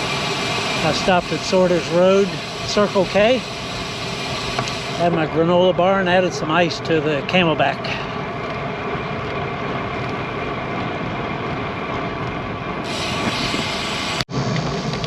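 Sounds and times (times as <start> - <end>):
bright hiss: 0.0 - 5.3, 12.8 - 14.3
bicycle road noise: 0.0 - 15.0
wind noise: 7.4 - 15.0.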